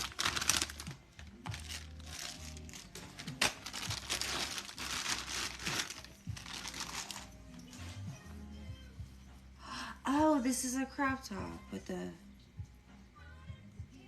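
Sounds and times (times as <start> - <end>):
packaging crinkling and rustling: 0.0 - 7.4
soft background music: 0.0 - 14.0.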